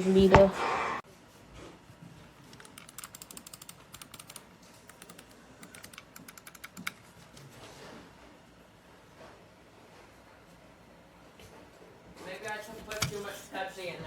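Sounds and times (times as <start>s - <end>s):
mouse buttons clicking rapidly: 2.5s - 7.2s.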